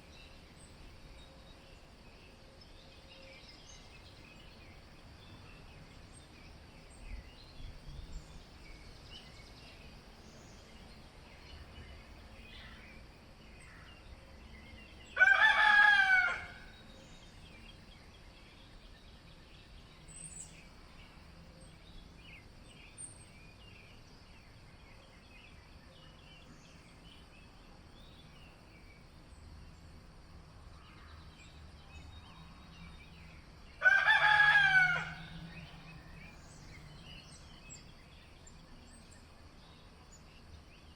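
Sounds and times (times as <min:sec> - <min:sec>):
rooster crowing: 0:15.2 - 0:16.7, 0:33.8 - 0:35.6.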